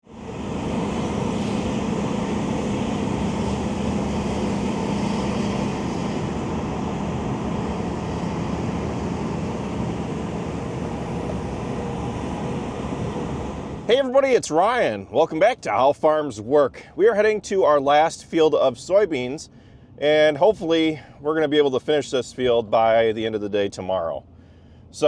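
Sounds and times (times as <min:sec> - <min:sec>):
vehicle engine running: 0:00.0 - 0:13.9.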